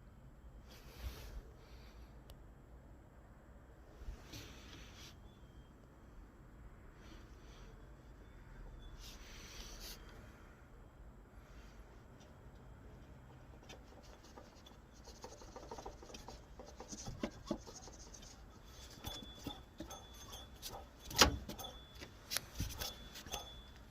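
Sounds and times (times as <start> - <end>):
thin high squeak: 7.5 - 10.2, 13.7 - 23.9
water pump clicking and rubbing: 13.0 - 23.9.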